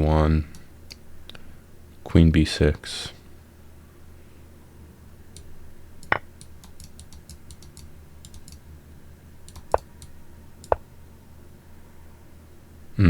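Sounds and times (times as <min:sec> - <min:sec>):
computer mouse clicking: 0:06.4 - 0:08.6, 0:09.5 - 0:10.8.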